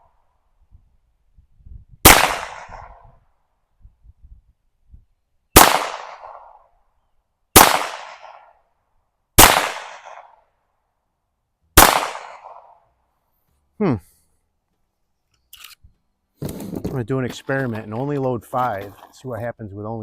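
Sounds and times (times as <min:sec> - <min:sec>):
pistol shots with echo: 0:02.1 - 0:03.0, 0:05.6 - 0:06.6, 0:07.6 - 0:08.5, 0:09.4 - 0:10.4, 0:11.8 - 0:12.7.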